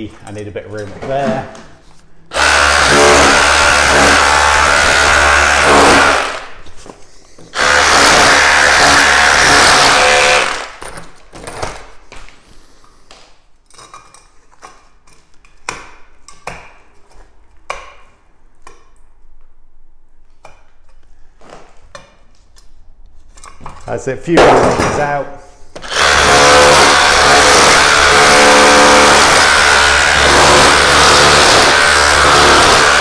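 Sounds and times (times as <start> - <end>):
rotary hammer chiselling brick: 2.4 - 6.2, 25.8 - 33.0.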